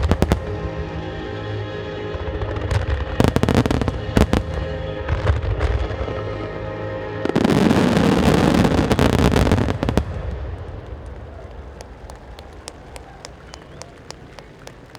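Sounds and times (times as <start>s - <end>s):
fireworks bursting and crackling: 7.3s - 14.9s.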